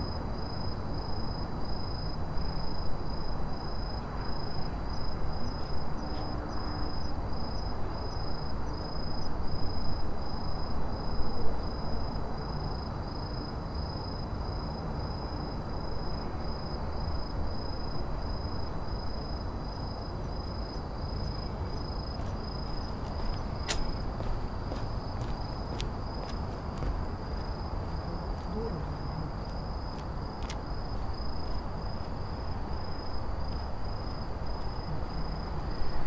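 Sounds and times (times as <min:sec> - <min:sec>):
city traffic rumble: 0:00.0 - 0:36.0
cricket chirping: 0:00.0 - 0:36.0.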